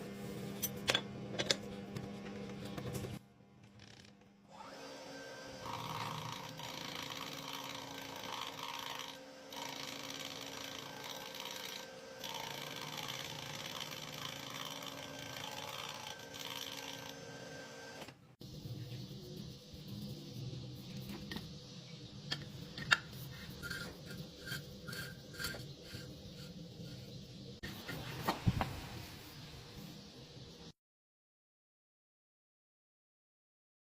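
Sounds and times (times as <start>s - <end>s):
machine tool scraping cutting: 5.7s - 18.0s, 23.6s - 27.2s.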